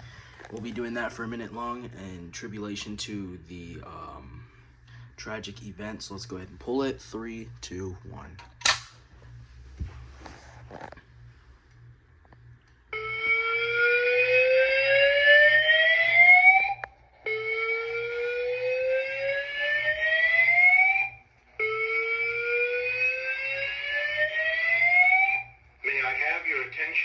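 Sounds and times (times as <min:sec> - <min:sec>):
fire alarm whoop tone: 0:12.9 - 0:25.7.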